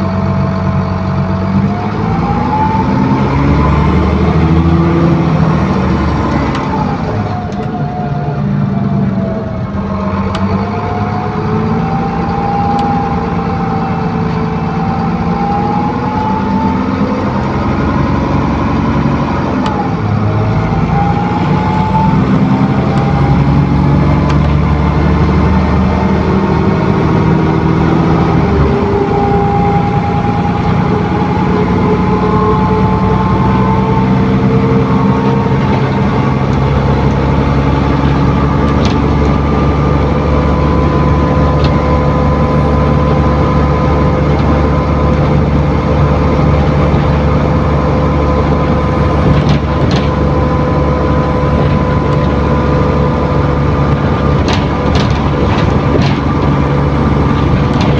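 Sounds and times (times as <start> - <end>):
bus diesel engine: 0.0 - 57.9.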